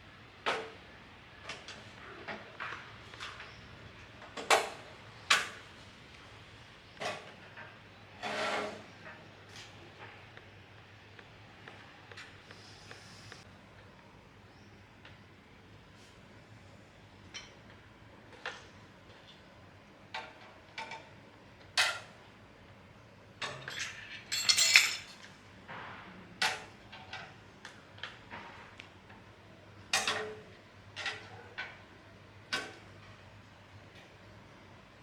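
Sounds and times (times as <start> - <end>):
metal tools clinking: 23.6 - 25.3.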